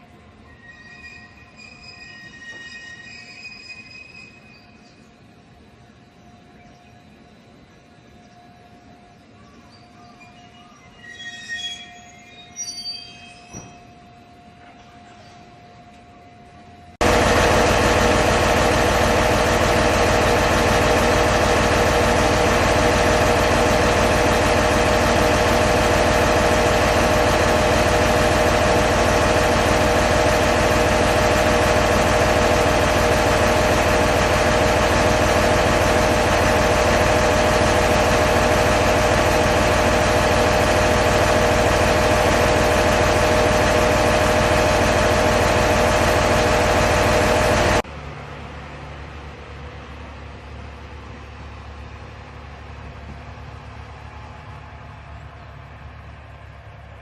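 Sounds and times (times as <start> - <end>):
constant engine whine: 13.5 - 57.0
diesel engine idling: 17.0 - 47.8.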